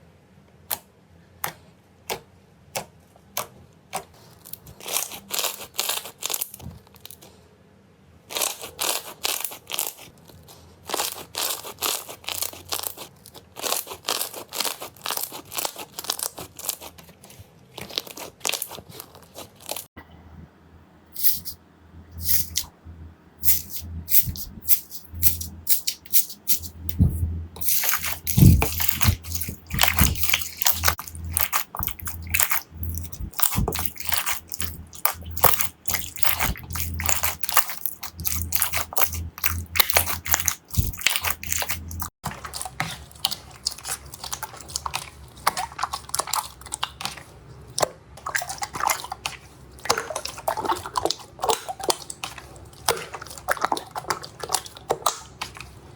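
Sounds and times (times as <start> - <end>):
slime squeezed by hand: 23.4 - 42.1.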